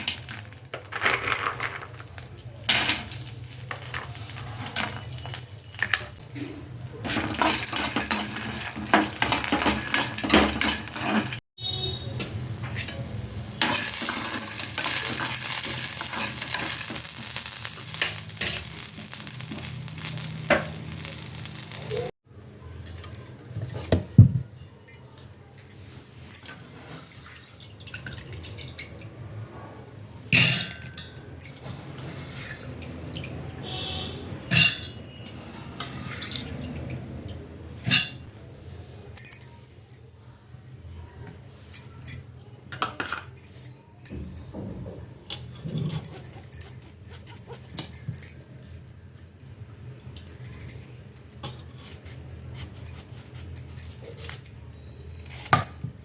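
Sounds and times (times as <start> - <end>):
utensils clinking: 0.0 - 22.1, 41.6 - 56.0
food sizzling in a hot pan: 13.6 - 22.1.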